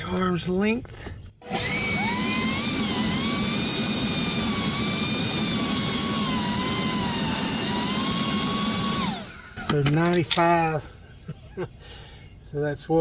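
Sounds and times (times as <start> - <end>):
leaf blower running: 1.4 - 9.9.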